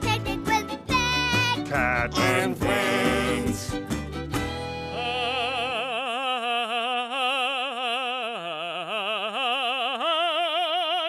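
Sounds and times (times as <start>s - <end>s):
backing music: 0.0s - 5.7s.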